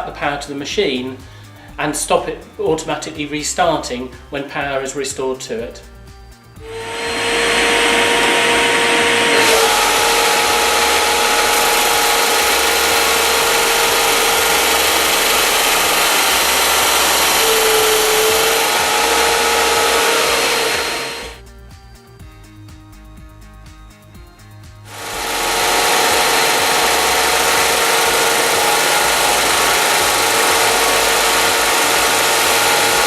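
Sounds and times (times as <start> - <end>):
sander whining and grinding: 6.6 - 21.4, 24.9 - 33.0.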